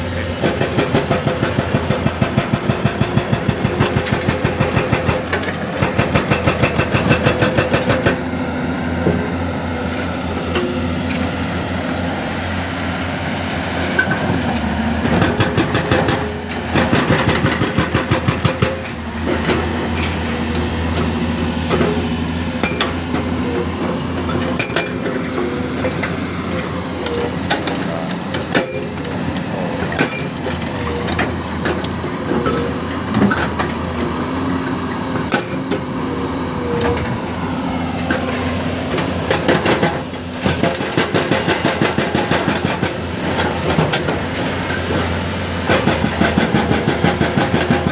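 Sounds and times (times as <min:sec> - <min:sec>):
diesel engine running: 0:00.0 - 0:47.9
hydraulic breaker hammering rock: 0:00.2 - 0:08.3, 0:14.0 - 0:37.2, 0:38.0 - 0:47.9.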